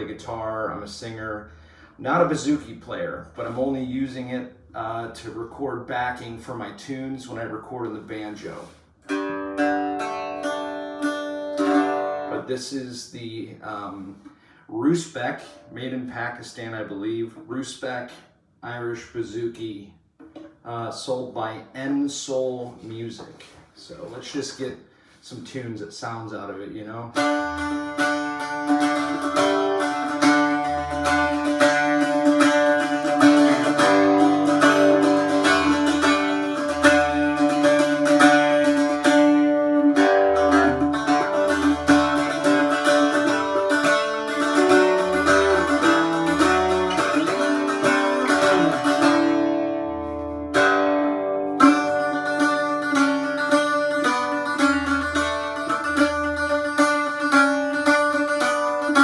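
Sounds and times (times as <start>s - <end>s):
bouzouki plucked tune with drone: 0.0s - 13.0s, 27.2s - 59.0s.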